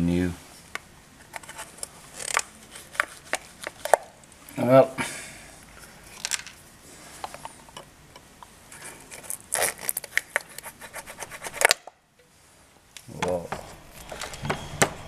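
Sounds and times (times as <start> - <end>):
hands and tools scraping and clicking: 1.2 - 4.1, 7.2 - 11.9.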